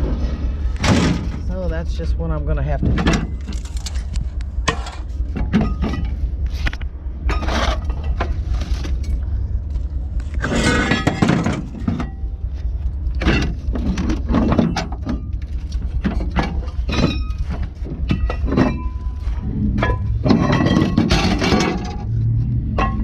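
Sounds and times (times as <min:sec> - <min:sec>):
vehicle engine rumbling: 0:00.0 - 0:23.0
scrap metal clanking onto pile: 0:10.4 - 0:12.2, 0:13.2 - 0:22.1.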